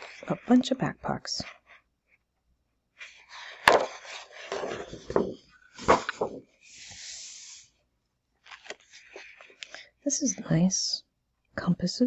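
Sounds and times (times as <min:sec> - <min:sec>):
paper rustling: 0:00.0 - 0:00.6, 0:03.0 - 0:07.7, 0:08.4 - 0:09.9
paper sliding rub: 0:03.0 - 0:07.8, 0:08.4 - 0:09.7.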